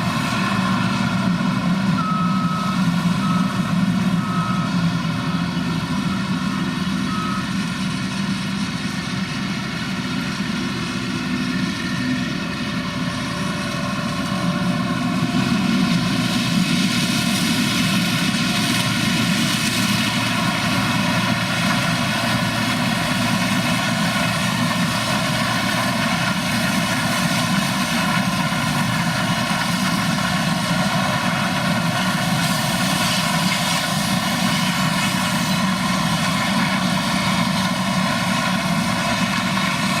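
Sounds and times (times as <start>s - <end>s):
heavy machinery engine drone: 0.0s - 40.0s.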